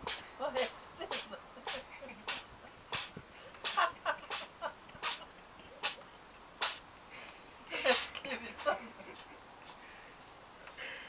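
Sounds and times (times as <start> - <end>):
cat sneezing: 1.1 - 6.0, 6.6 - 6.8, 7.8 - 8.8.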